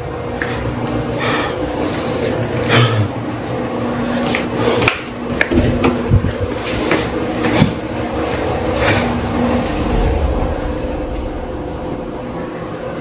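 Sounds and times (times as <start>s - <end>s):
steady low hum: 5.1s - 13.0s.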